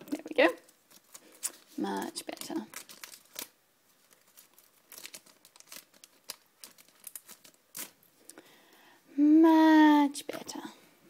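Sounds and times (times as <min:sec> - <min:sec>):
foil wrapper crinkling: 0:00.5 - 0:08.0
cards being handled: 0:00.7 - 0:08.0.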